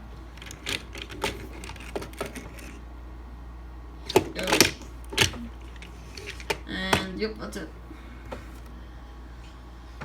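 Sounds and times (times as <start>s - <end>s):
plastic toy figures clacking: 0.4s - 2.8s, 4.1s - 7.1s.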